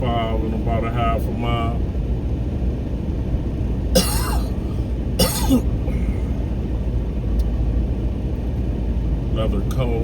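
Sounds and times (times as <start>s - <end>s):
car road and engine rumble: 0.0s - 10.0s
person coughing: 4.0s - 4.6s, 5.2s - 5.7s.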